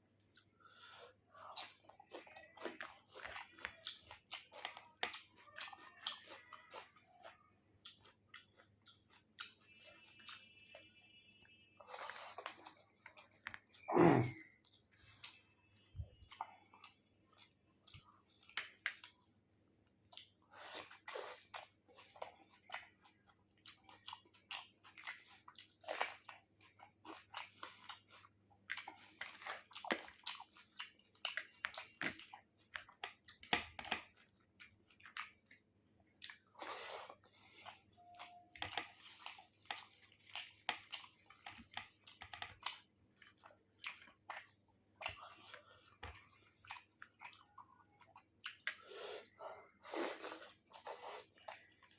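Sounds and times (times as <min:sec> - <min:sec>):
person chewing food: 0:00.0 - 0:51.9.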